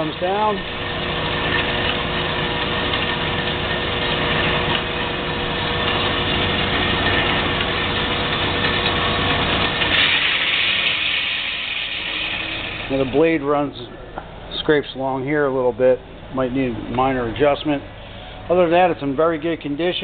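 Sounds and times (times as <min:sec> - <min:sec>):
band saw whirring: 0:00.0 - 0:15.2.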